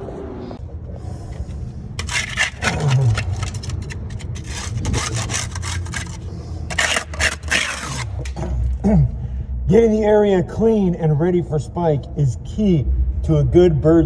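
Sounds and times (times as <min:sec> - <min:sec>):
hand scraper scraping a ledge: 0:02.0 - 0:08.8.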